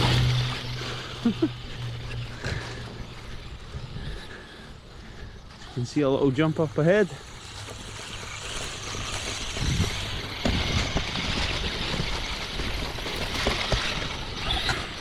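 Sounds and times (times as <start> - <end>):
rc truck electric motor running: 0.0 - 15.0
rc truck knocking on bumps: 7.4 - 15.0.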